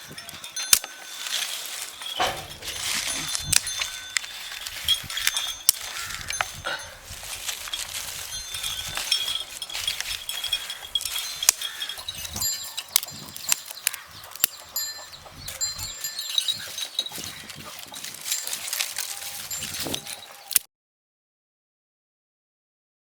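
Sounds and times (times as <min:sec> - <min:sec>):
sharp clicks and knocks: 0:02.2 - 0:04.3.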